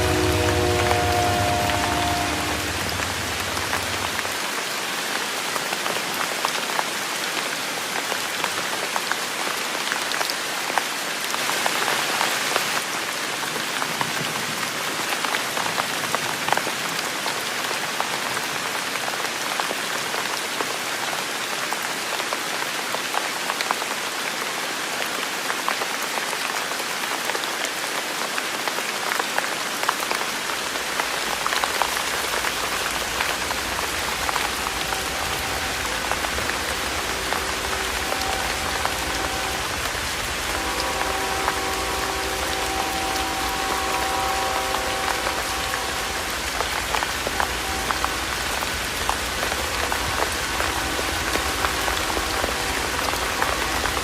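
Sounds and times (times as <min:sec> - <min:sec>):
low rumble: 0:00.0 - 0:04.4
rain drops on hard surface: 0:00.0 - 0:54.0.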